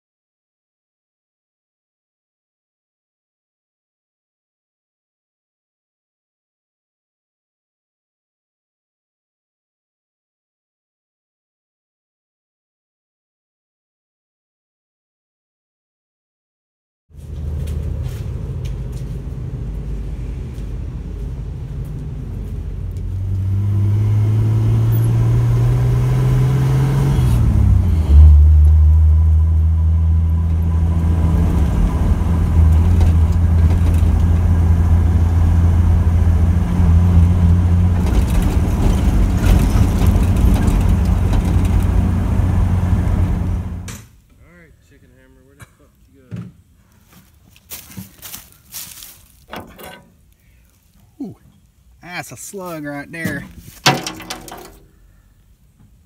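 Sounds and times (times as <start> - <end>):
engine running: 17.1 - 43.9, 53.2 - 54.9.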